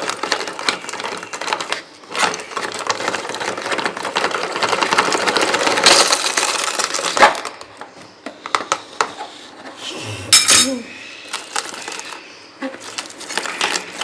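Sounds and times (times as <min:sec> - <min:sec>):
dry bread crunching: 0:00.0 - 0:07.7, 0:11.2 - 0:14.0.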